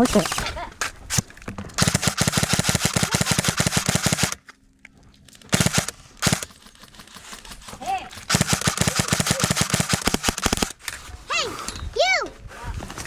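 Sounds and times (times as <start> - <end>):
airsoft gun automatic bursts: 1.8 - 4.4, 5.5 - 10.8.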